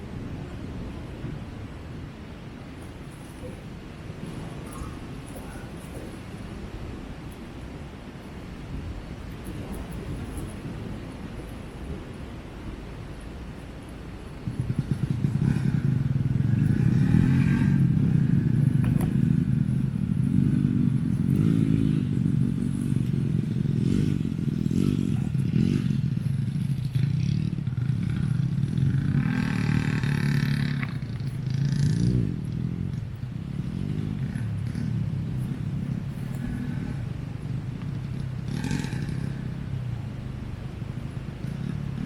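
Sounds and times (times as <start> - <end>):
vehicle engine revving: 14.2 - 42.0.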